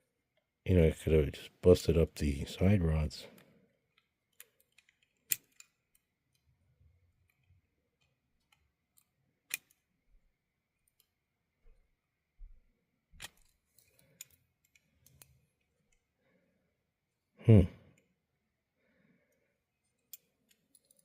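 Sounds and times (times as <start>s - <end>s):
small metal parts clicking: 3.9s - 6.4s, 13.2s - 16.0s, 19.8s - 21.0s.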